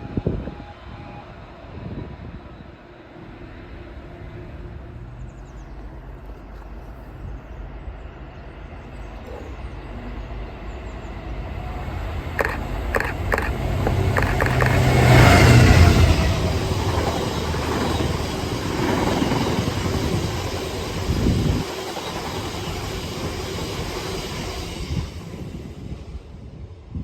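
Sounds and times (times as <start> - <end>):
diesel locomotive engine drone: 0.0 - 27.0
sharp clicks: 12.4 - 15.0.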